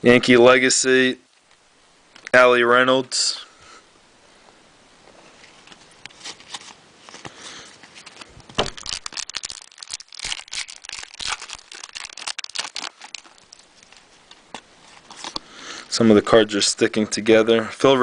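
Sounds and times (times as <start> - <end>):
cards rustling: 5.3 - 16.0
wrapper crinkling and tearing: 5.5 - 16.0.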